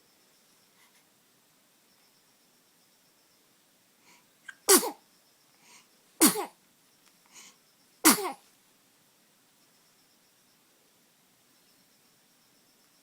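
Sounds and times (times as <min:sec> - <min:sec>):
person sneezing: 0:04.5 - 0:05.0, 0:06.2 - 0:06.5, 0:08.1 - 0:08.4.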